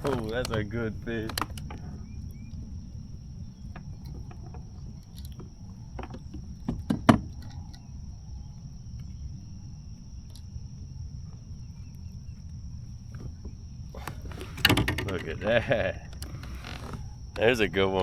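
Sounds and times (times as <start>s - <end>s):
low steady rumble: 0.0s - 18.0s
knocks and clicks of handling tackle: 13.2s - 17.5s.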